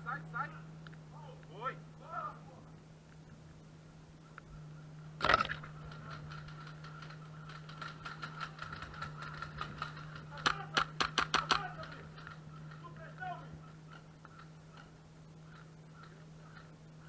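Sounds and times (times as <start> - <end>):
steady low hum: 0.0 - 17.0
airsoft guns firing: 5.2 - 13.0.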